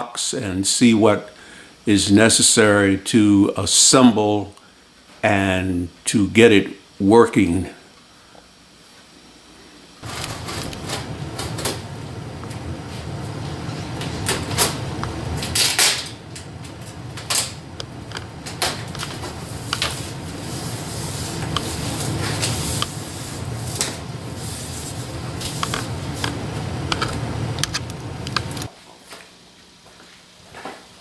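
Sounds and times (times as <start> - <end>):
low hum: 10.0 - 28.7.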